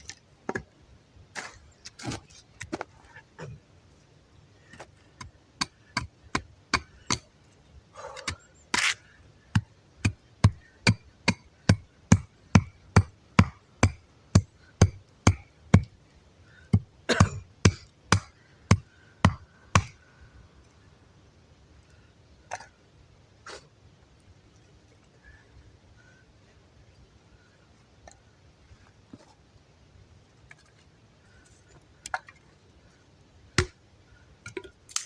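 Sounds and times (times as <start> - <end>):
axe chopping wood: 5.2 - 7.3, 9.6 - 16.0, 16.7 - 20.0, 33.6 - 33.8.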